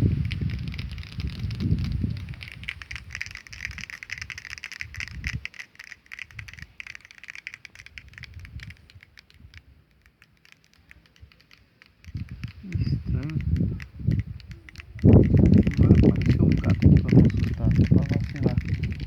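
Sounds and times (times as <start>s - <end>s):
termites rattling tiny clicks: 0.0s - 19.0s
low rumbles: 12.0s - 19.0s.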